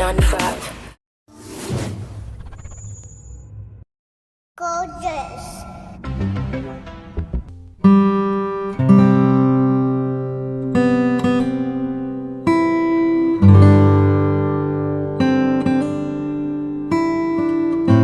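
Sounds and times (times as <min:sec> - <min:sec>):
acoustic guitar strumming chords: 0:07.6 - 0:18.0.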